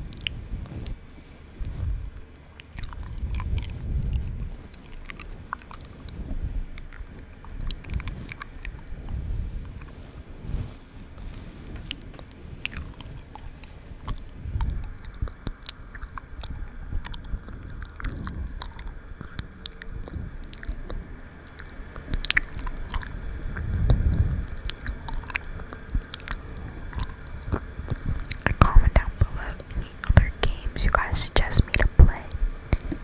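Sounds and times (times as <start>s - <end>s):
wet mouth clicks and smacks: 21.5s - 23.1s, 23.9s - 33.0s.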